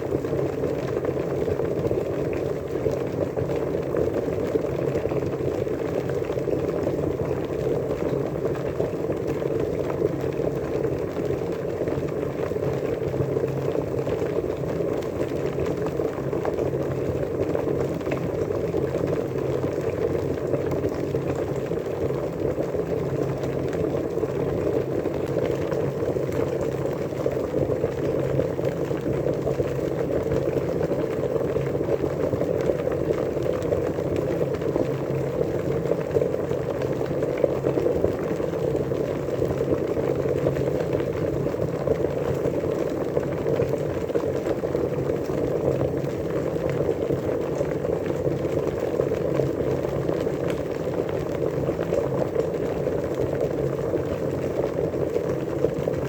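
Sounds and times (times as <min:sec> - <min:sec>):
water boiling: 0:00.0 - 0:56.0.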